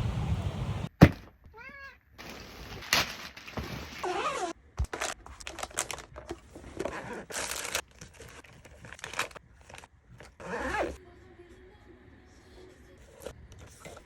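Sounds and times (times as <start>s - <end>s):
backpack material crinkling: 2.2s - 11.0s.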